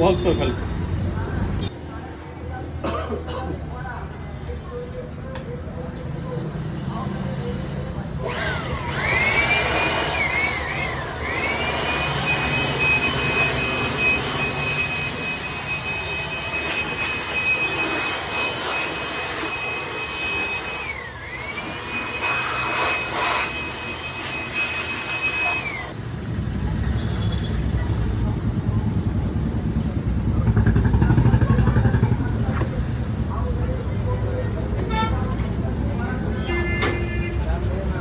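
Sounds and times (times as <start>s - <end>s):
electric air blower whining: 8.2s - 26.0s.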